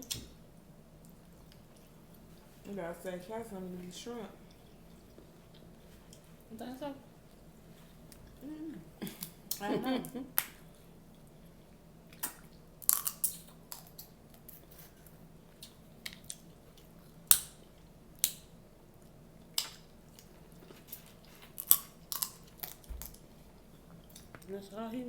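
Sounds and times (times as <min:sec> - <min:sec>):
chewing: 0:01.0 - 0:02.7, 0:04.4 - 0:06.5, 0:10.4 - 0:18.3, 0:19.0 - 0:24.5
crunching bites of food: 0:12.1 - 0:23.2.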